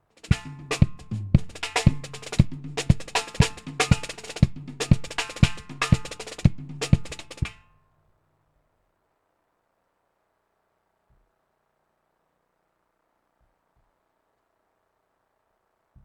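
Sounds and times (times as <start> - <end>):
drum-led music with bass: 0.2 - 7.6.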